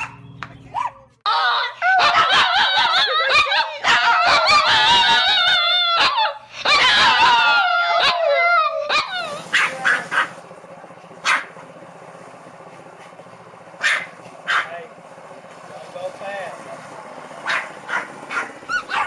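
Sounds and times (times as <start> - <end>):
dog yipping: 0.0 - 10.4, 11.2 - 11.6, 13.8 - 14.8, 17.4 - 19.0
small dog howling: 0.8 - 10.3.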